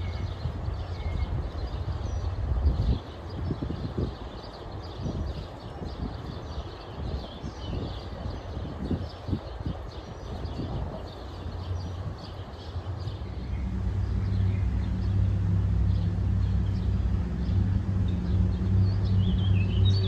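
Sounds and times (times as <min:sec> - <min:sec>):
small birds chirping: 0:00.0 - 0:20.0
low mechanical hum: 0:10.6 - 0:20.0.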